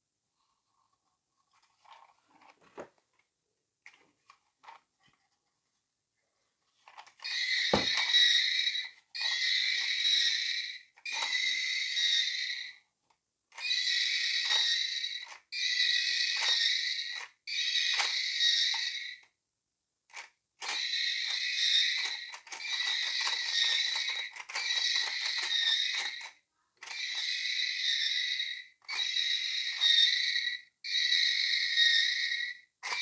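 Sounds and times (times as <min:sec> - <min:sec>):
pulsing high-pitched toy buzz: 0:20.6 - 0:26.3, 0:26.9 - 0:33.0.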